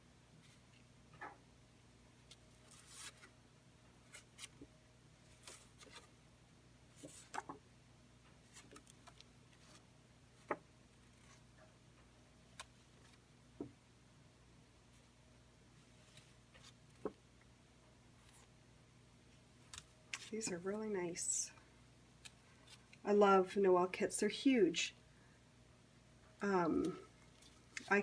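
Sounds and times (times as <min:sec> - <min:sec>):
low steady hum: 0:00.0 - 0:28.0
paper cards handled: 0:02.2 - 0:03.3, 0:05.3 - 0:06.1, 0:08.4 - 0:09.8, 0:19.6 - 0:20.7.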